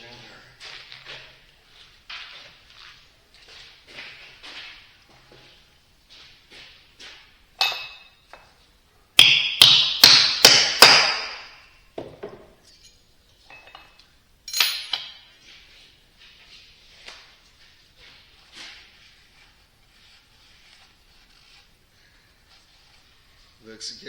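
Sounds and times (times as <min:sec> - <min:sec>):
ringing metallic hammer taps: 0:07.6 - 0:08.5
hammer knocking: 0:09.2 - 0:12.6.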